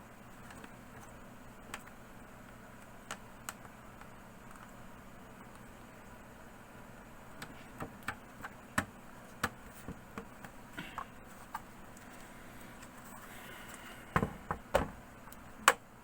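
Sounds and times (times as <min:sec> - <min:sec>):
laptop parts clicking and tapping: 0:02.8 - 0:04.8, 0:07.4 - 0:11.7, 0:14.2 - 0:15.8.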